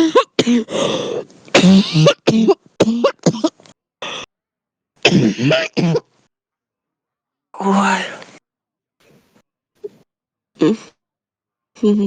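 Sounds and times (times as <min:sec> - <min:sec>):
deep chesty coughing: 0:01.5 - 0:04.3, 0:05.0 - 0:06.1.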